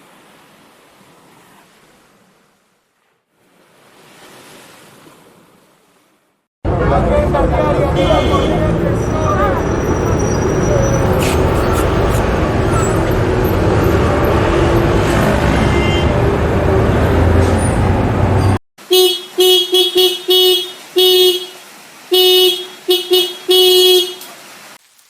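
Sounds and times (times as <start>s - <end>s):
road traffic noise: 6.6s - 24.8s
car horn honking: 6.9s - 13.1s, 14.2s - 16.4s, 18.8s - 24.3s.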